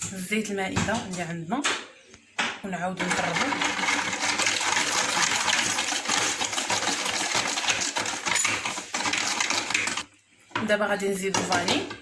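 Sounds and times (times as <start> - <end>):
whisk clinking against bowl: 3.0 - 10.0.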